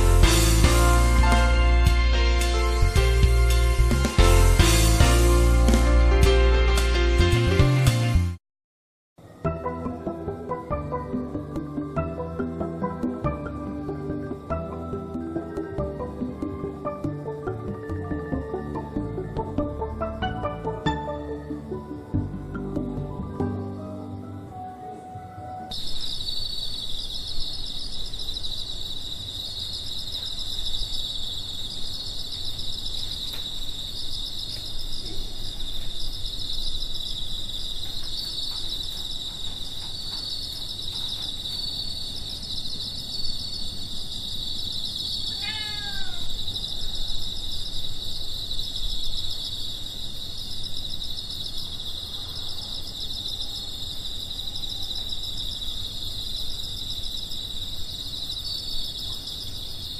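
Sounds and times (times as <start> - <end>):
insects chirping and trilling: 9.2 - 25.0, 25.6 - 59.9
short falling animal call: 45.3 - 46.4.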